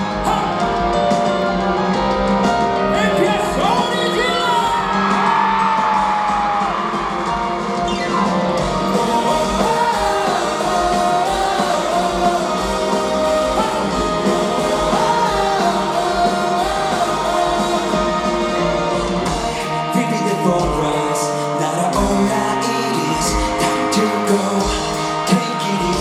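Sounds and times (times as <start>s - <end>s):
person singing: 0.0s - 1.5s, 8.6s - 26.0s
live band playing: 0.0s - 26.0s.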